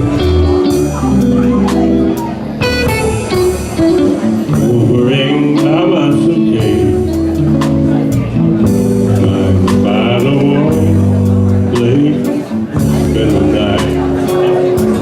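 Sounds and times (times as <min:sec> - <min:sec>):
soul blues ballad with guitar and singing: 0:00.0 - 0:15.0.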